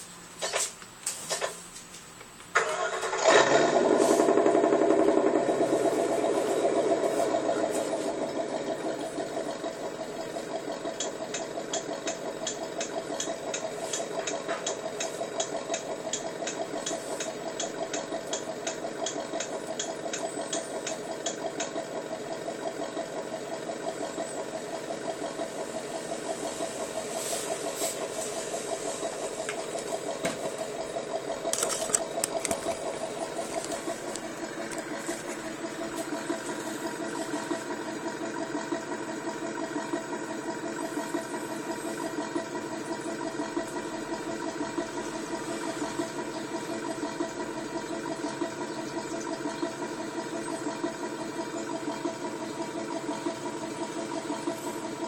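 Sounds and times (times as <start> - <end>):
engine idling: 0.0 - 55.0
loud engine bursts: 2.6 - 55.0
light even ticking: 10.2 - 21.9.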